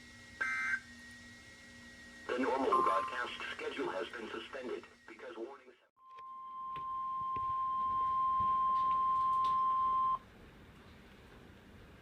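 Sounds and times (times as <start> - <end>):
steady alarm beep: 0.4 - 0.8, 2.4 - 3.4, 6.3 - 10.2
faint broadcast hiss: 2.3 - 5.8.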